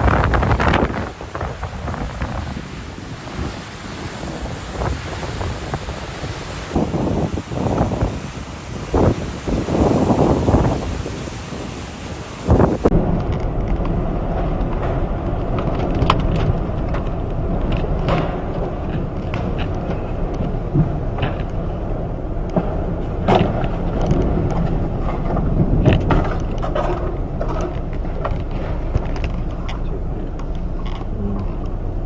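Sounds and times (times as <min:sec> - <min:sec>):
strong wind buffeting microphone: 0:00.0 - 0:32.0
knocks and rattles: 0:12.8 - 0:21.8, 0:22.4 - 0:31.6.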